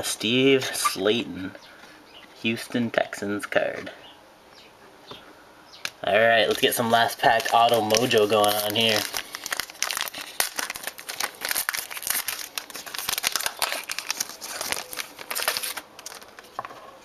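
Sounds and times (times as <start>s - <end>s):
card pack wrapper tearing and crinkling: 6.3s - 16.8s.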